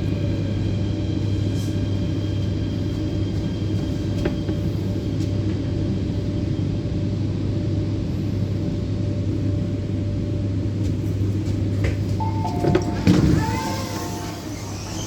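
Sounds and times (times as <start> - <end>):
train carriage rumble and hum: 0.0 - 15.0
faint whining tones: 12.2 - 15.0.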